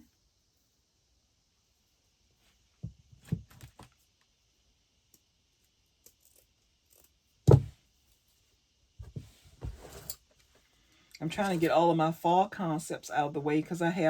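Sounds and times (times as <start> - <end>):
loud knock on tabletop: 7.5 - 7.7.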